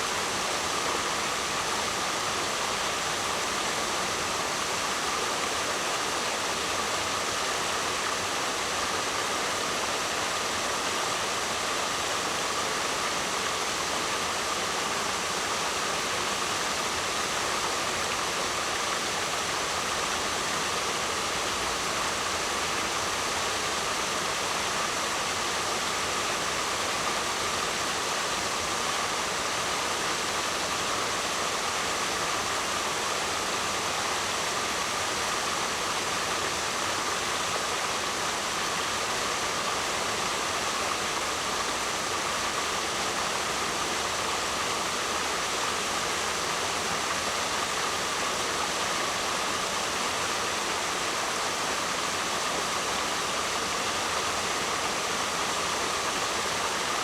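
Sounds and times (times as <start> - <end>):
waterfall rushing: 0.0 - 57.0.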